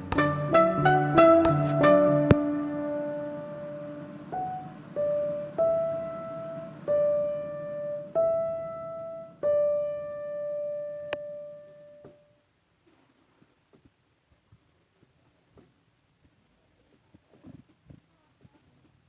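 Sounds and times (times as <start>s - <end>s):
slow piano melody: 0.0s - 12.2s.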